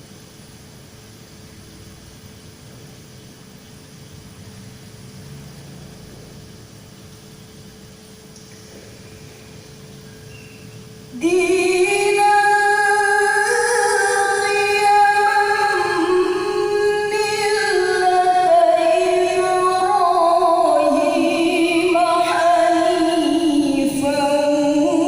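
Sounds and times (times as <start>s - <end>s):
faint hiss: 0.0s - 25.0s
thin steady hum: 0.0s - 25.0s
woman chanting melodic recitation: 11.1s - 25.0s.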